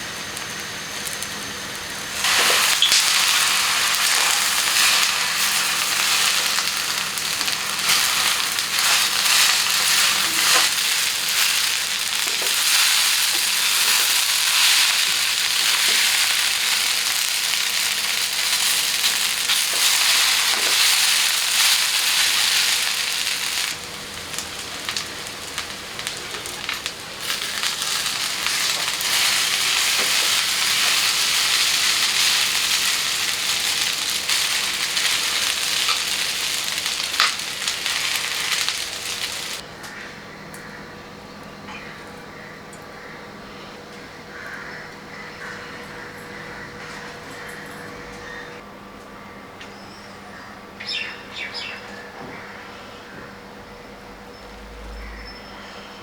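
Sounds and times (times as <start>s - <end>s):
food sizzling in oil: 0.0s - 39.6s.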